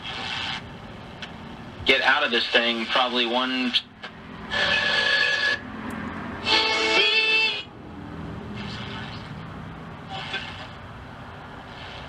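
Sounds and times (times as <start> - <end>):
radio hiss: 0.0 - 0.8, 1.8 - 5.5, 8.5 - 10.9, 11.5 - 12.0
radio gliding tones burst: 1.9 - 3.9, 8.5 - 10.8.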